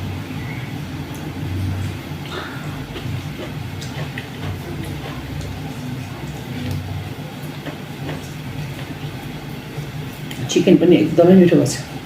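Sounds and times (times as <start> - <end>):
low steady hum: 0.0 - 12.0
person chewing: 1.1 - 9.3.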